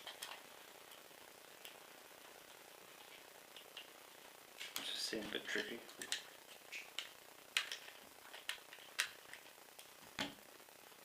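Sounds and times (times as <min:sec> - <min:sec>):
small parts clicking and tapping: 0:05.5 - 0:10.4.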